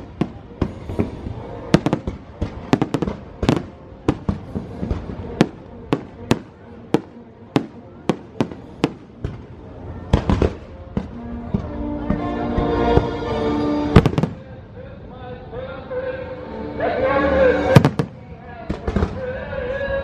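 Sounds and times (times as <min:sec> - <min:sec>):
fireworks bangs: 0:00.0 - 0:12.2, 0:13.9 - 0:14.5, 0:17.8 - 0:19.3.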